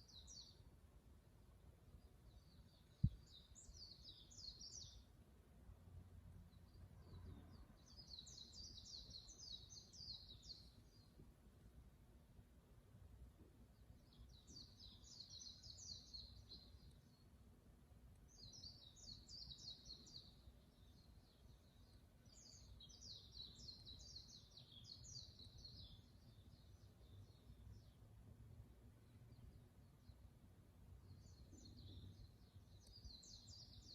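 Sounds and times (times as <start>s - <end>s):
bird chirping: 0.0s - 0.7s, 1.8s - 5.2s, 6.5s - 11.2s, 13.5s - 17.4s, 18.2s - 28.1s, 31.0s - 33.9s.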